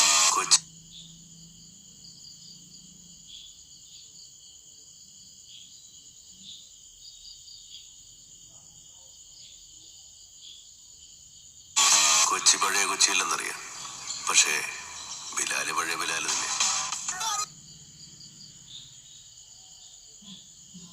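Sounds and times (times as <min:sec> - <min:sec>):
crickets chirping: 0:00.0 - 0:20.9.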